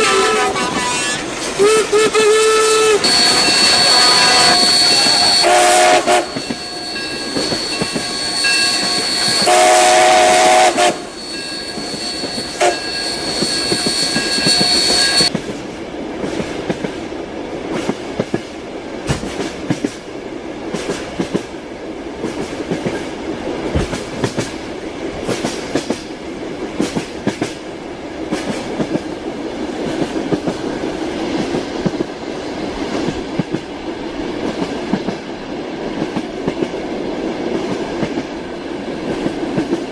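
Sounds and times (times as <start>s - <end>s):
train horn: 0.0s - 15.3s
running train whine: 0.0s - 39.9s.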